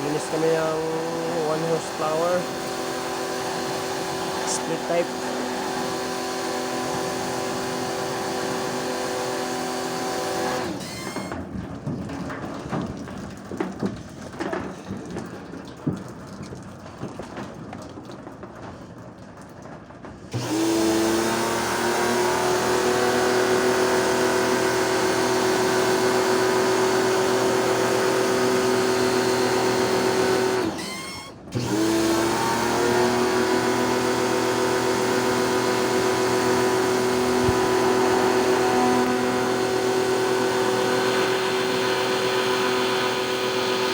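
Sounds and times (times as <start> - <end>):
pressure washer motor humming: 0.0 - 11.4, 20.3 - 43.9
knocks and clatter: 11.3 - 20.3.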